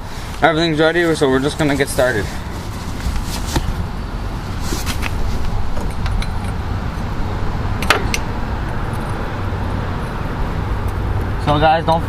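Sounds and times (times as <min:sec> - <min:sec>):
metal hand tools clinking: 0:05.8 - 0:06.6.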